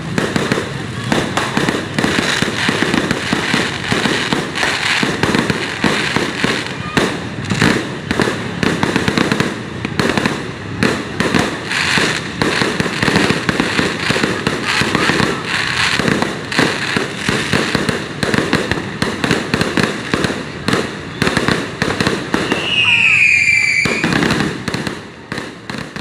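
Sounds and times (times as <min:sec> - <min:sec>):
firecrackers and fireworks banging: 0:00.0 - 0:26.0.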